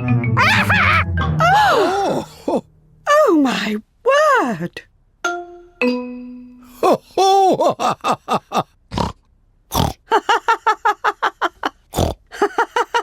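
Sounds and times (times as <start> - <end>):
cartoon pigs laughing: 0.4 - 1.0
pig snorts: 8.9 - 10.0, 11.9 - 12.2.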